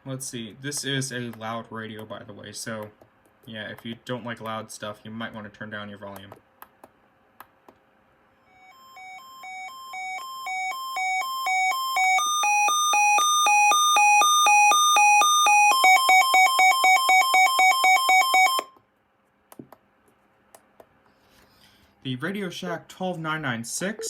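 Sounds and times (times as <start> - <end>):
two-tone electronic alert beeping: 8.5 - 18.7.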